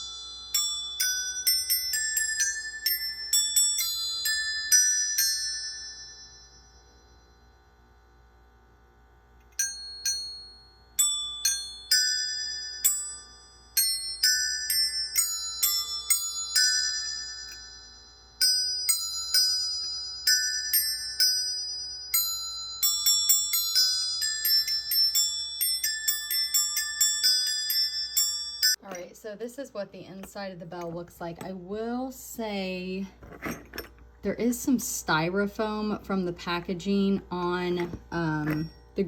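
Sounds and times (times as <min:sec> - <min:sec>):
bells chiming a carol tune: 0:00.0 - 0:07.5, 0:09.6 - 0:29.0.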